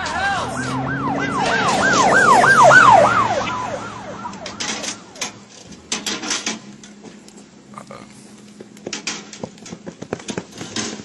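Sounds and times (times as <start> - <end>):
police siren yelping: 0.0 - 5.4.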